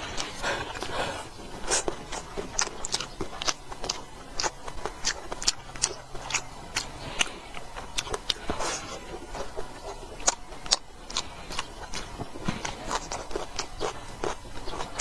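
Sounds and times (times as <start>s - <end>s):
chewing and mouth smacks: 0.0s - 15.0s.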